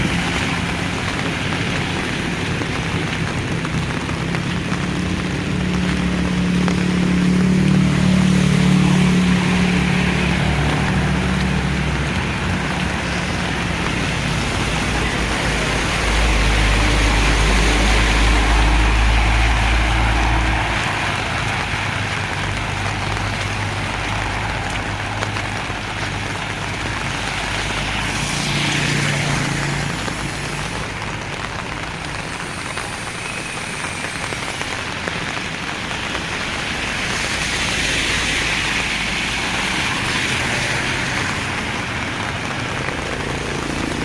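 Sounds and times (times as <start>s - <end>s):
vehicle engine passing: 0.0s - 31.9s
heavy rain falling: 0.0s - 44.0s.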